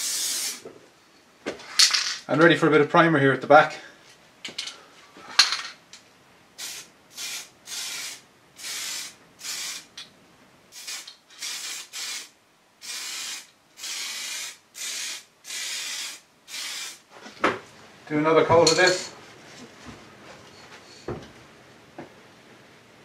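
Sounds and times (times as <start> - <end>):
aerosol spray can hissing: 0.0 - 0.6, 6.6 - 9.9, 10.7 - 17.0.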